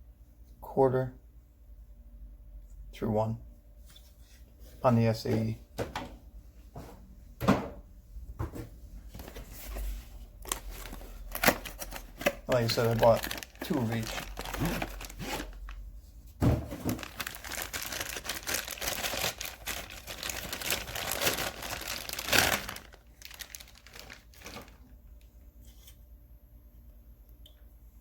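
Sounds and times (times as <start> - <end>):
packaging rustling: 9.2 - 15.8, 16.7 - 24.9.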